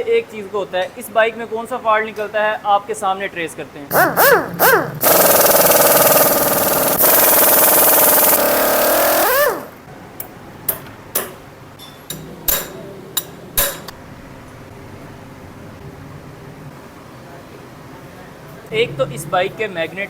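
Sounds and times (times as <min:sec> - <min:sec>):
impact wrench running: 0:03.9 - 0:09.9.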